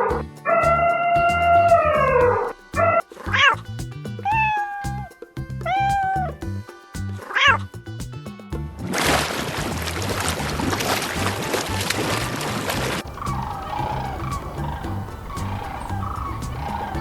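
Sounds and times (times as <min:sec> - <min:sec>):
background music with beat: 0:00.0 - 0:17.0
cat meowing: 0:04.3 - 0:05.1.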